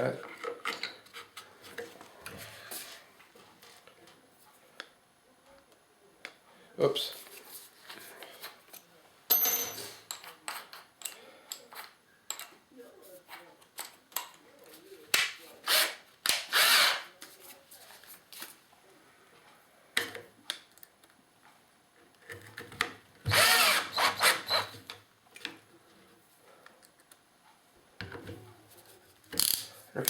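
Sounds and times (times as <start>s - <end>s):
power drill driving screws: 15.7s - 17.0s, 23.3s - 24.7s.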